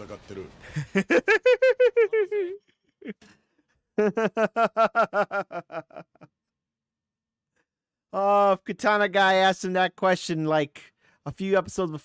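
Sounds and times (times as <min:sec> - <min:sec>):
person laughing: 0:00.6 - 0:03.4, 0:04.0 - 0:06.4.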